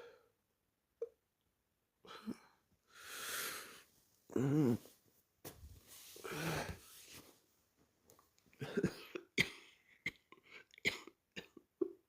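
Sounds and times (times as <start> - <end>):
person groaning drowsily: 4.3 - 4.9.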